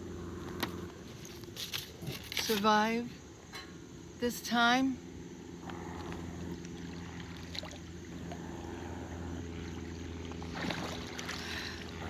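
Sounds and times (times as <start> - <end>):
steady low hum: 0.0 - 12.0
faint water wash: 6.6 - 12.0.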